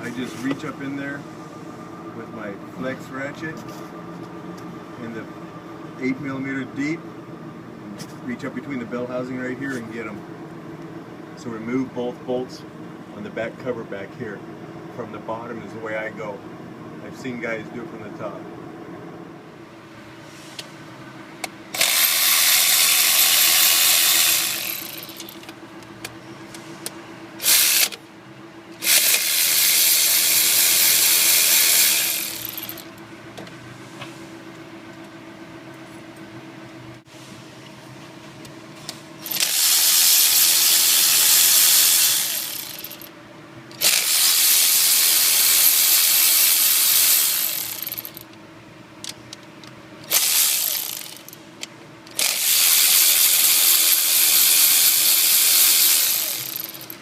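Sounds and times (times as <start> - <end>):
steady low hum: 0.0 - 43.8
power ratchet running: 21.7 - 25.5, 27.4 - 28.0, 28.8 - 33.0, 39.2 - 43.1, 43.7 - 48.3, 50.0 - 51.4, 52.1 - 57.0.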